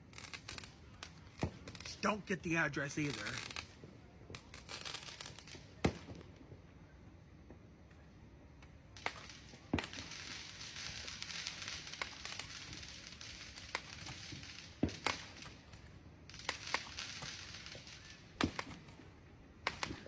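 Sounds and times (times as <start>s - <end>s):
steady high hiss: 0.0s - 3.8s
fireworks bangs: 0.0s - 6.3s, 9.0s - 20.0s.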